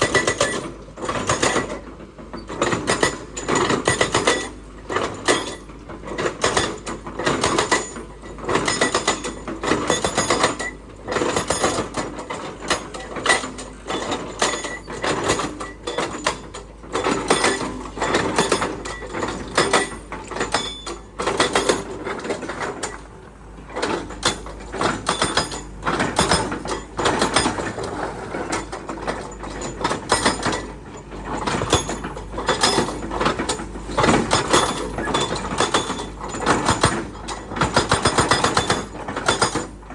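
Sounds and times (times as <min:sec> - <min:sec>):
excavator working: 0:00.0 - 0:39.9
metallic clanking and rattling: 0:23.7 - 0:39.8.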